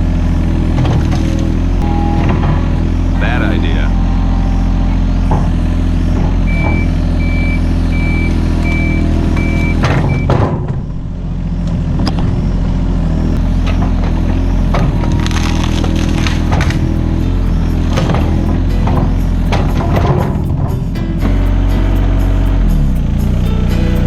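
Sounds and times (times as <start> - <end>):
diesel engine running: 0.0 - 24.0
travel alarm beeping: 1.8 - 10.4
sharp crack: 14.8 - 17.0.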